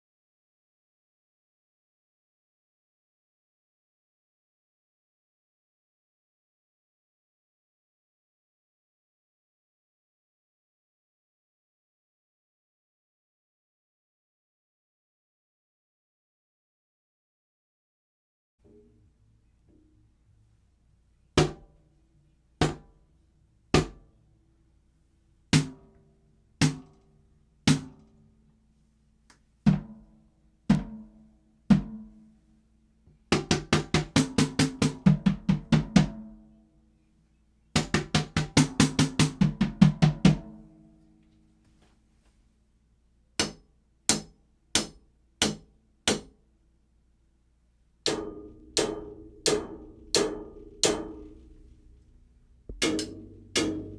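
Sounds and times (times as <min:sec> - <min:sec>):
fast drum rolls: 0:33.4 - 0:36.2, 0:37.8 - 0:40.5
drum strokes: 0:48.1 - 0:53.9.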